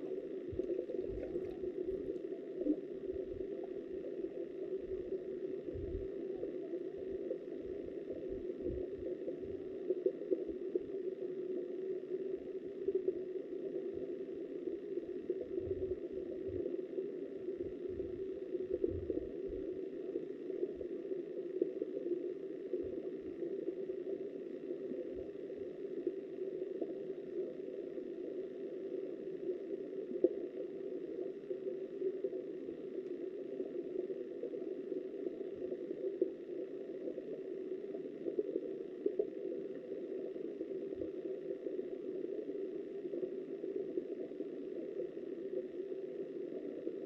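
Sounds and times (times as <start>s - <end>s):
muffled underwater river rushing: 0.0s - 47.0s.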